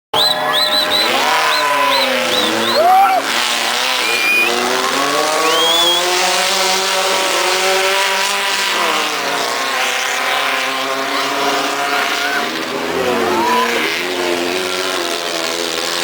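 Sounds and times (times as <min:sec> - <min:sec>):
high squeal: 0:00.2 - 0:03.2, 0:03.8 - 0:06.1
race car engine revving: 0:00.2 - 0:16.0.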